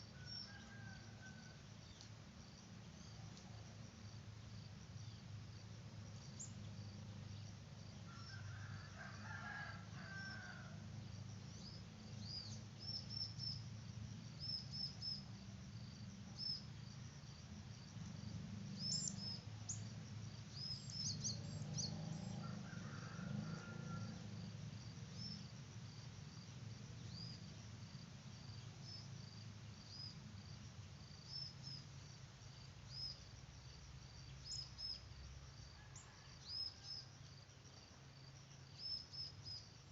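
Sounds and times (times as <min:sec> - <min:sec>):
insects and birds chirping: 0:00.0 - 0:39.9
rooster crowing: 0:00.2 - 0:01.6, 0:08.1 - 0:10.8, 0:21.8 - 0:24.5, 0:35.7 - 0:37.1.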